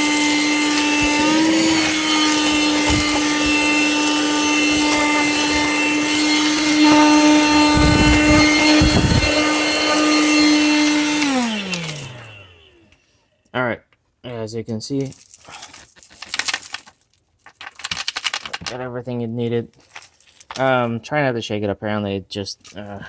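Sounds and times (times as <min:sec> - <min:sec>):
handheld vacuum motor whine: 0:00.0 - 0:13.1.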